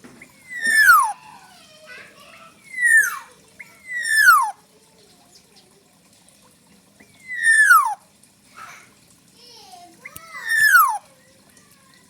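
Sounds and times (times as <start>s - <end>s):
oriole calling: 0.2s - 1.2s, 2.5s - 4.7s, 7.0s - 8.1s, 10.0s - 11.1s.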